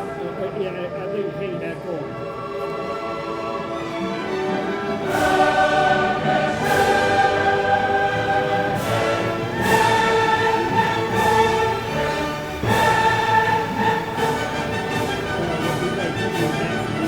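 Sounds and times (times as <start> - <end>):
choral and orchestral music: 0.0 - 17.0.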